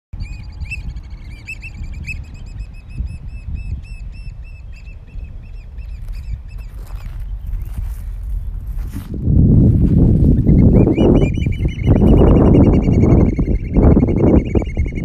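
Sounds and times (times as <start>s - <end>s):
birds piping calls: 0.2s - 9.0s, 10.3s - 15.0s
low rumble: 5.0s - 12.2s.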